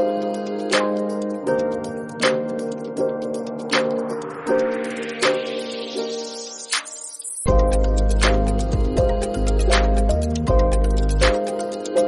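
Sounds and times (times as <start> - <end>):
soft instrumental music: 0.0 - 12.0
light steady beat: 6.8 - 12.0.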